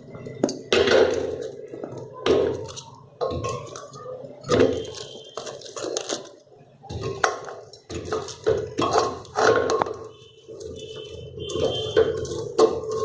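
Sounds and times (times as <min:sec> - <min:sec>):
vegetables clattering into pressure cooker: 0:00.3 - 0:10.1.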